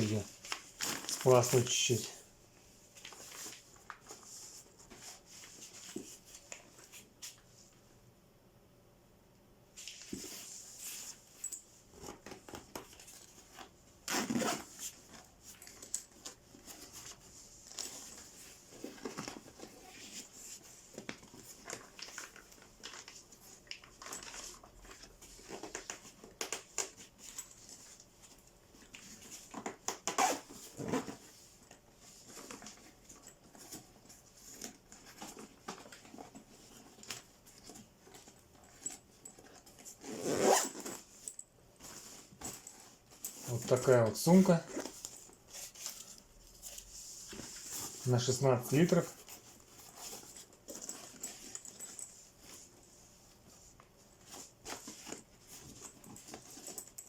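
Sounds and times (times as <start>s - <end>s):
cooler bag fabric rustling: 30.2s - 57.0s.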